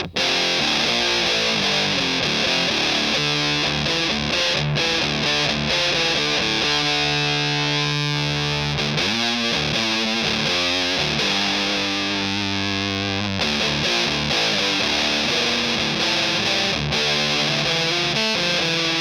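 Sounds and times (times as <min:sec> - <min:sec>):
fuzz electric guitar: 0:00.0 - 0:19.0.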